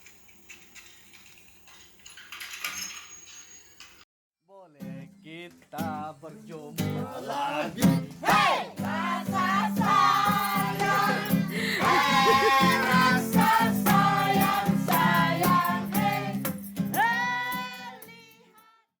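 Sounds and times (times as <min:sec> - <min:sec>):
music with singing voice: 0:05.8 - 0:18.6.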